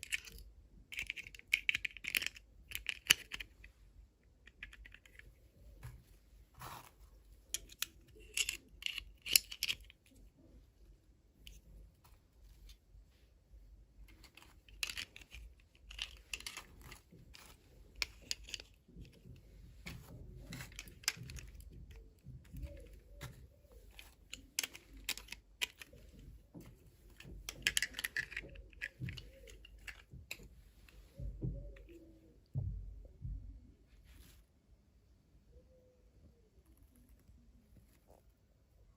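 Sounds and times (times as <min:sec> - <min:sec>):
plastic pieces clicking: 0:00.0 - 0:05.4, 0:07.4 - 0:10.5, 0:14.1 - 0:30.6.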